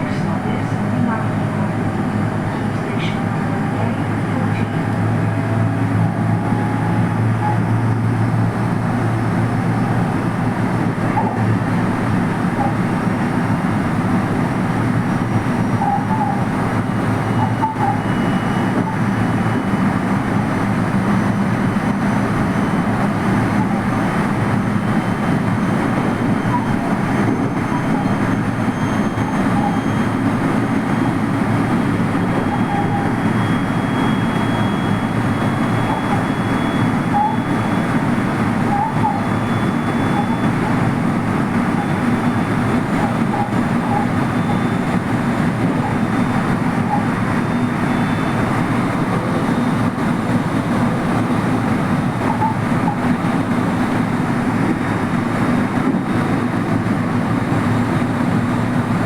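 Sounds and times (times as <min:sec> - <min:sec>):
train wheels rumbling on rail: 0:00.0 - 0:59.0.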